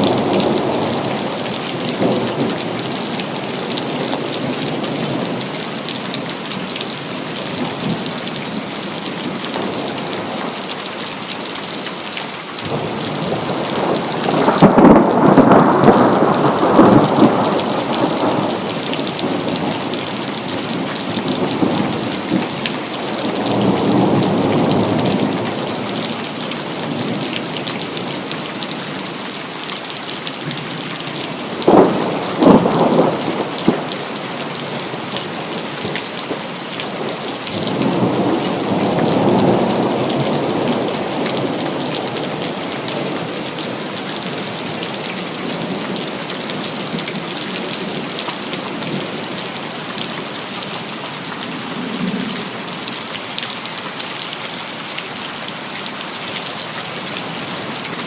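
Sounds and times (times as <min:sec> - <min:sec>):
steady rain: 0:00.0 - 0:58.0
thunder: 0:12.7 - 0:19.9, 0:31.6 - 0:33.9.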